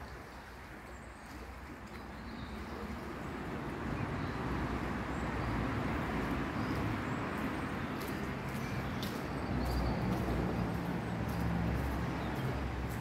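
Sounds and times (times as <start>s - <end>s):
road traffic noise: 0.1s - 13.0s.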